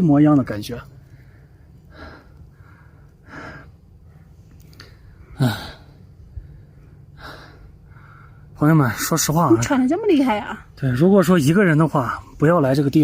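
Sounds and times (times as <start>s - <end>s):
person breathing hard: 1.0s - 8.6s.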